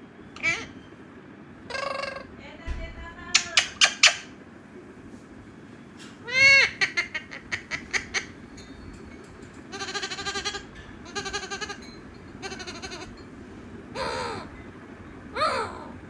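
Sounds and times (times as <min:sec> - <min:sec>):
parrot chirping and calling: 0:00.4 - 0:00.8, 0:03.3 - 0:04.4, 0:06.2 - 0:08.6, 0:09.6 - 0:13.3, 0:14.0 - 0:14.6, 0:15.4 - 0:16.0.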